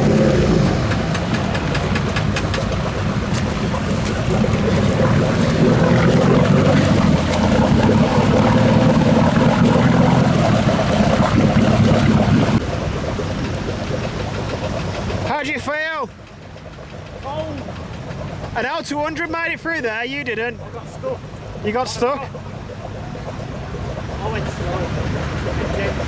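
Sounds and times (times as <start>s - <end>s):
engine running under load: 0.0s - 26.0s
water sloshing and splashing: 0.0s - 26.0s.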